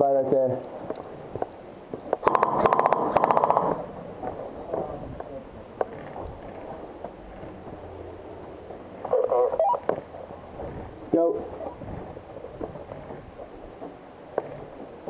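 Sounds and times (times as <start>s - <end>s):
airsoft rifle full-auto burst: 2.2s - 3.8s.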